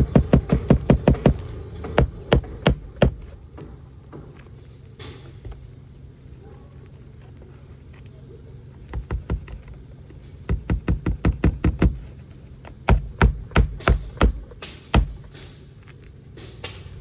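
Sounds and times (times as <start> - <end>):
hammer striking nails: 0.0 - 4.4, 8.9 - 15.8.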